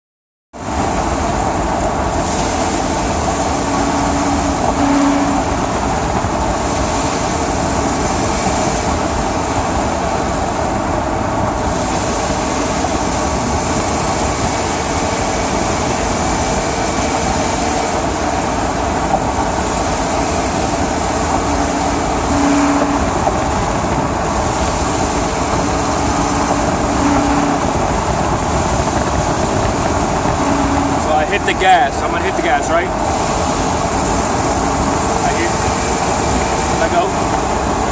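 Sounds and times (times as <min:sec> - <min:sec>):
van engine and road noise: 0:00.6 - 0:37.9
short low hum: 0:12.0 - 0:31.6.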